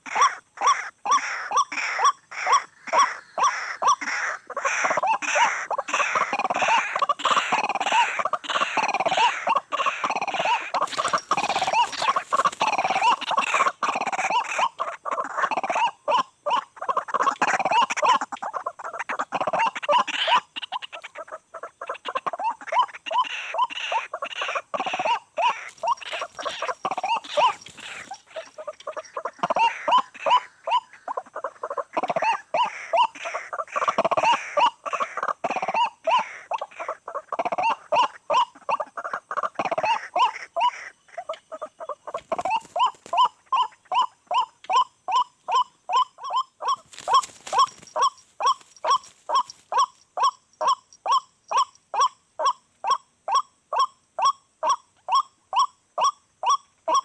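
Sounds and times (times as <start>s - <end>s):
waterhen calling: 1.1s - 14.9s, 24.8s - 31.0s, 41.8s - 51.7s.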